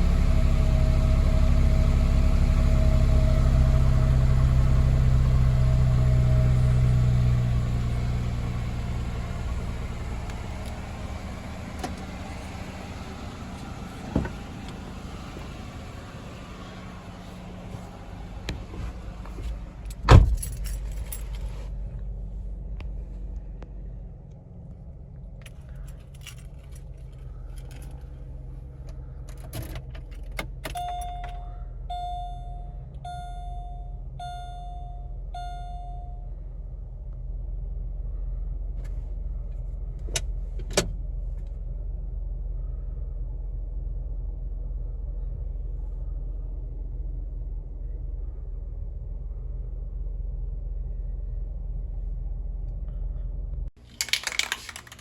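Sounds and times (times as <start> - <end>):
car engine idling: 0.0 - 55.0
metallic clicks and jingles: 19.8 - 21.5, 25.5 - 28.1
loud thump: 20.0 - 20.5
car warning chime: 30.7 - 36.3.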